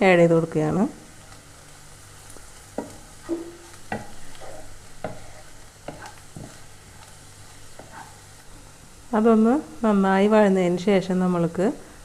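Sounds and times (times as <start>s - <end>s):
onions sizzling in a pan: 0.0s - 12.0s
utensil stirring in a pan: 1.0s - 9.4s.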